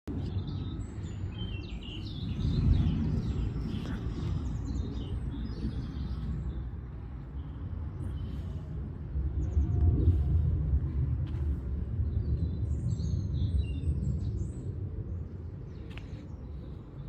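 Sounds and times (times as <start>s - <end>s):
small birds chirping: 0.1s - 17.0s
steady low rumble: 0.1s - 17.0s.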